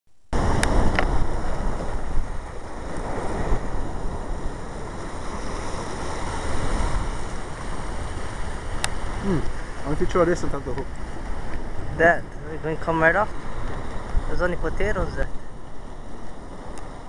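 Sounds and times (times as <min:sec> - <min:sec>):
wind buffeting microphone: 0:00.3 - 0:17.0.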